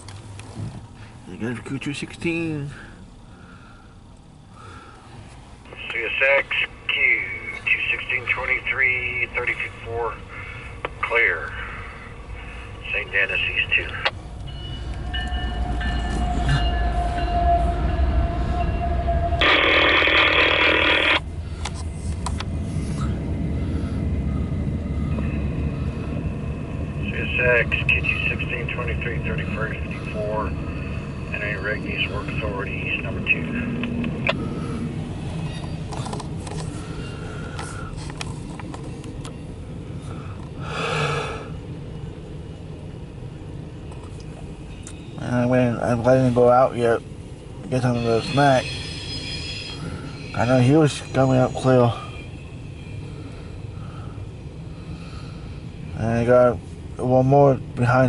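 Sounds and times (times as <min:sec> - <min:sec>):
freight train rumbling: 0:00.0 - 0:58.0
radio static burst: 0:19.4 - 0:21.2.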